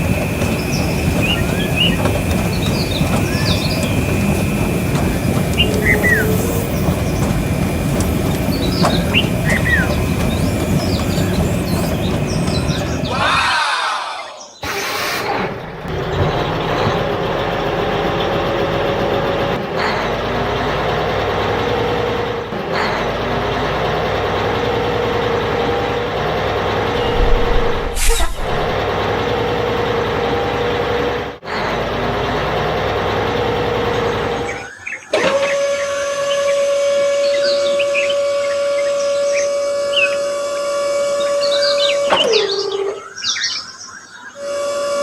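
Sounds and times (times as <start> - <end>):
motor whining steadily: 0.0 - 13.3, 15.8 - 42.4.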